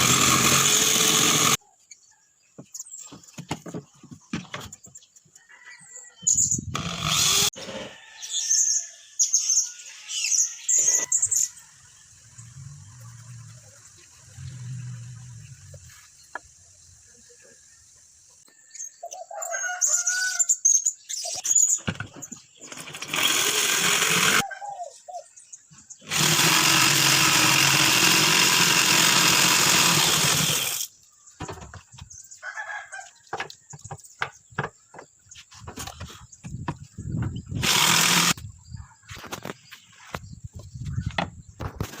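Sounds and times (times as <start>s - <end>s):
loud mechanical noise: 0.0s - 1.6s, 22.7s - 24.4s, 26.1s - 30.9s, 37.6s - 38.4s
rooster crowing: 19.2s - 20.5s, 32.4s - 33.2s.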